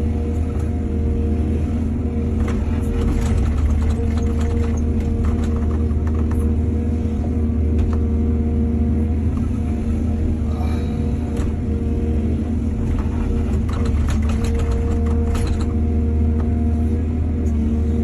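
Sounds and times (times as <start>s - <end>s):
excavator diesel engine running: 0.0s - 18.0s
knocks and rattles: 2.4s - 6.5s, 12.9s - 15.8s.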